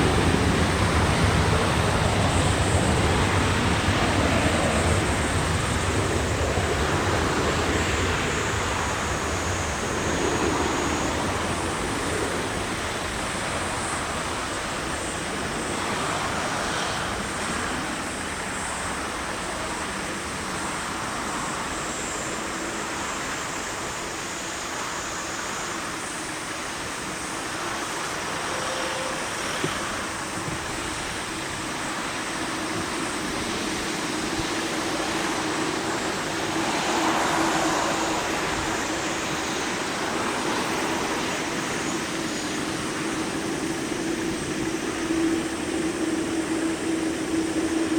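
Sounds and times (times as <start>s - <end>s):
jet engines roaring: 0.0s - 47.9s.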